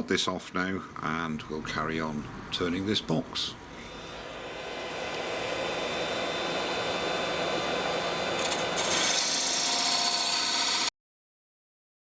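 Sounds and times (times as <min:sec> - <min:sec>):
wood lathe whining: 0:04.0 - 0:10.9
parting tool cutting wood: 0:07.9 - 0:10.9.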